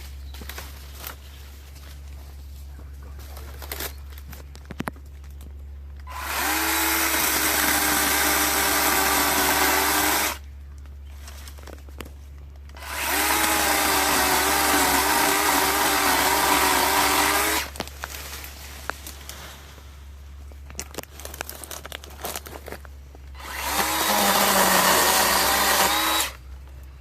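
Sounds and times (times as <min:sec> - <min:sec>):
electric chainsaw motor whine: 0:06.1 - 0:10.4, 0:12.8 - 0:17.8, 0:23.4 - 0:26.4.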